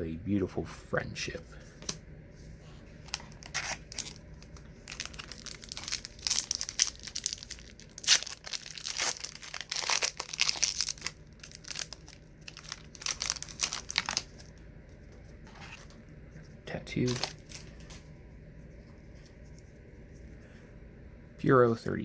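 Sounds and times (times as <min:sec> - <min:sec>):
wax paper wrapper tearing: 0:03.0 - 0:14.5, 0:17.0 - 0:17.9.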